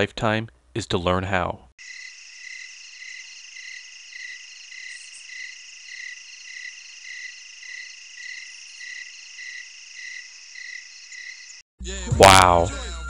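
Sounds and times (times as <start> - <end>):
crickets trilling: 1.8 - 11.6
insect chirping: 1.8 - 11.6.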